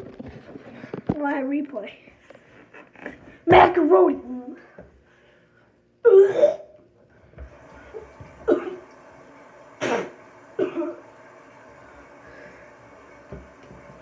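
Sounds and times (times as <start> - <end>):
person coughing: 9.8 - 11.0.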